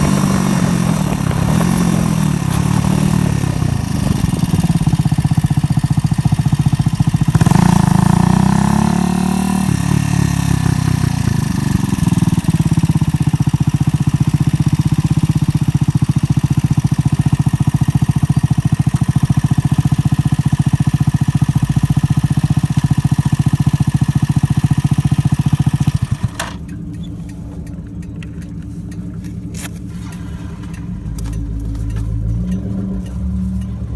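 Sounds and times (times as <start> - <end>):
motorcycle engine idling: 0.0 - 33.9
motorcycle engine running: 0.0 - 33.9
sharp clicks: 25.8 - 33.9.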